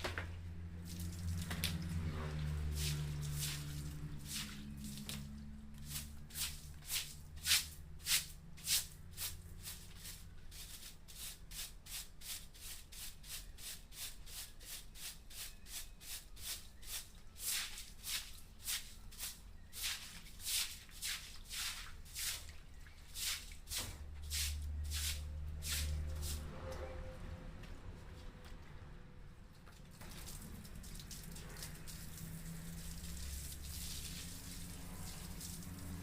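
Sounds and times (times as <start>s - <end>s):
scraping or brushing strokes: 0.8s - 27.1s.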